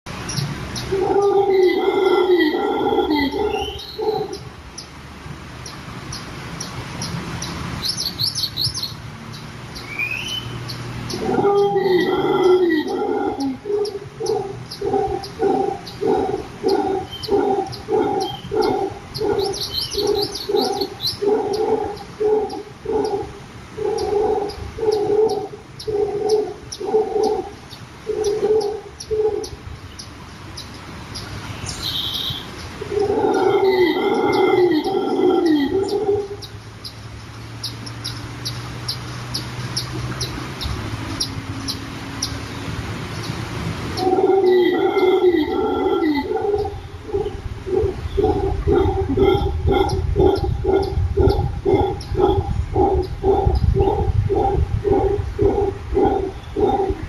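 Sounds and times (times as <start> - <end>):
repeated animal call: 0.3 - 4.5, 9.8 - 30.8, 31.8 - 37.0, 43.9 - 57.0.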